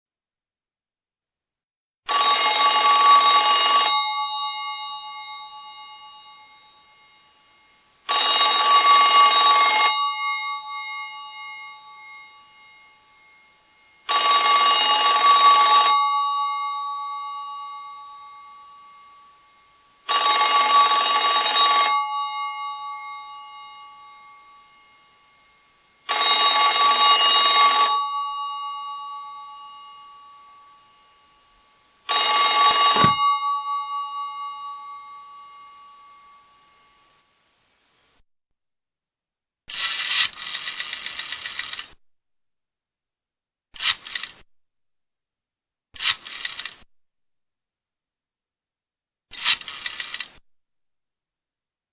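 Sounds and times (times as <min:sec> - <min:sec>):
rotary telephone bell ringing: 0:02.1 - 0:31.4, 0:32.1 - 0:37.0, 0:39.8 - 0:41.8, 0:46.2 - 0:46.7, 0:49.4 - 0:50.3.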